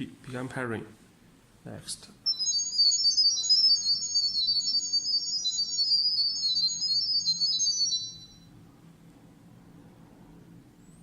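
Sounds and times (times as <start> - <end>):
high-pitched electronic beeps: 2.3 - 8.5.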